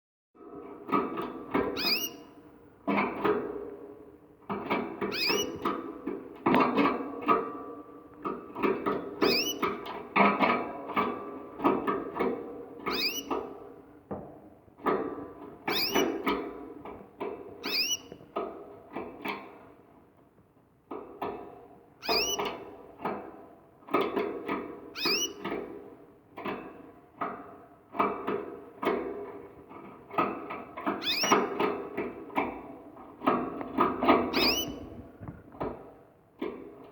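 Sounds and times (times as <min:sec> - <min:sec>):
canary chirping and trilling: 0:01.6 - 0:02.5, 0:04.8 - 0:05.7, 0:09.2 - 0:09.8, 0:12.8 - 0:13.5, 0:15.7 - 0:16.4, 0:17.6 - 0:18.2, 0:22.0 - 0:22.6, 0:25.0 - 0:25.6, 0:30.9 - 0:31.7, 0:34.0 - 0:35.1.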